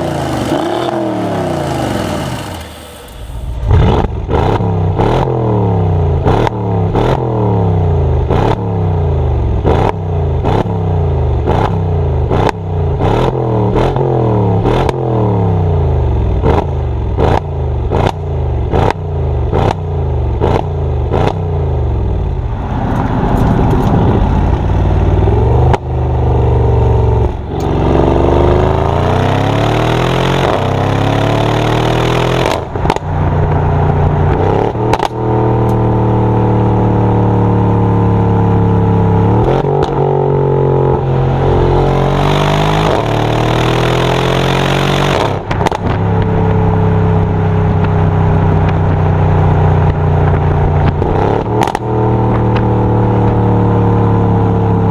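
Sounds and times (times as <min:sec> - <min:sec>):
exhaust cracks: 0:00.0 - 0:04.6, 0:22.2 - 0:26.2, 0:45.1 - 0:53.5
car exhaust revving: 0:00.0 - 0:54.9.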